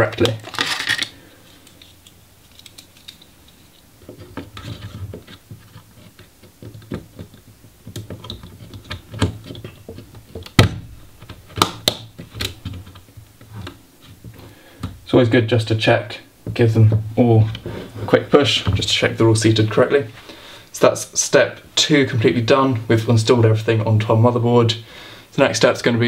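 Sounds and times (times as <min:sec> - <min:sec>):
handling sounds: 0:00.0 - 0:14.5.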